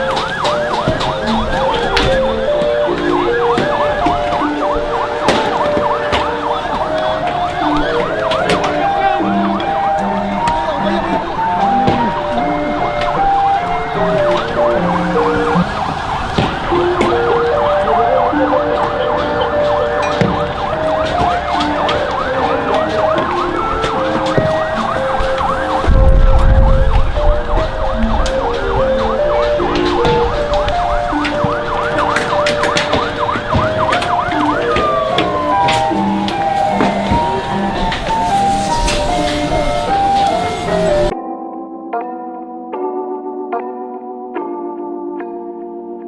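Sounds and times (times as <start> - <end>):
tone gliding downward: 0.0 - 45.8
deep rumble: 25.4 - 31.1.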